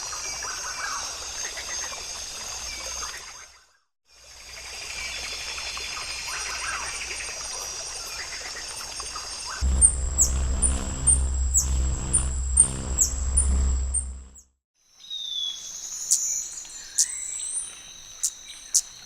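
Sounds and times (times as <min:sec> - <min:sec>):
low hum: 0:09.6 - 0:14.6.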